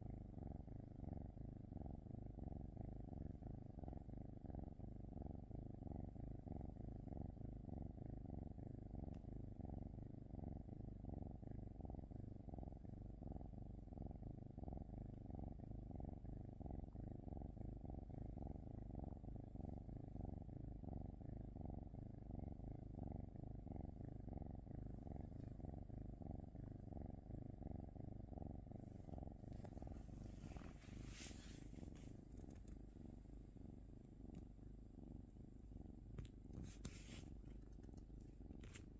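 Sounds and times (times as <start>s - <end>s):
cat purring: 0.0s - 38.9s
faint rustle: 28.8s - 33.0s, 36.2s - 38.9s.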